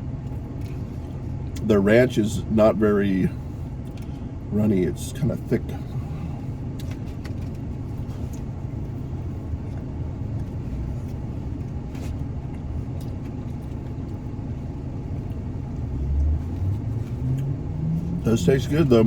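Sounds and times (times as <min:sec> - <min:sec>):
low rumble: 0:05.7 - 0:19.0.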